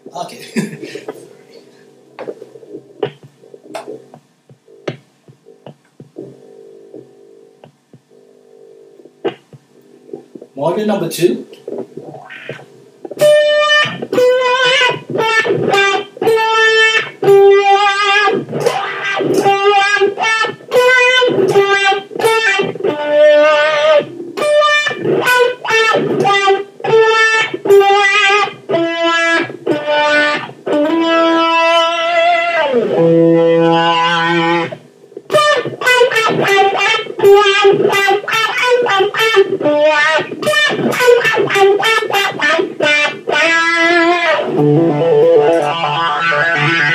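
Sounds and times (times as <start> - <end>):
overdriven electric guitar with wah: 11.5 - 46.9.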